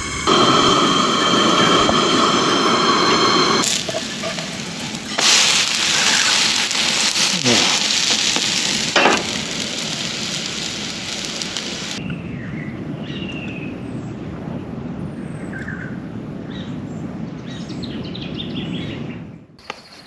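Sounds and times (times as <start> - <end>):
loud steady hiss: 0.0 - 12.0
low outdoor rumble: 0.0 - 12.0.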